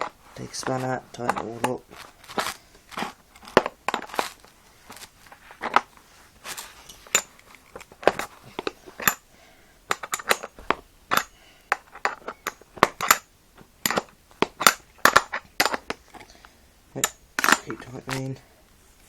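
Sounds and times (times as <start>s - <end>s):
spanner clicking on metal bolt: 9.9s - 16.0s.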